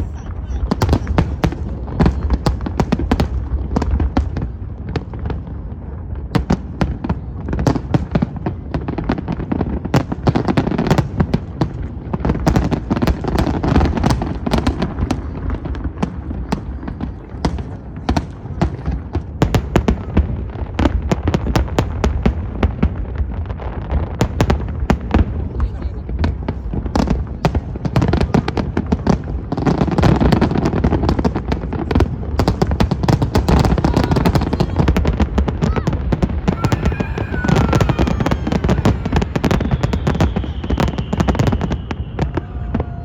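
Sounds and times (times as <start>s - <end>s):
fireworks bangs and crackles: 0.0s - 43.0s.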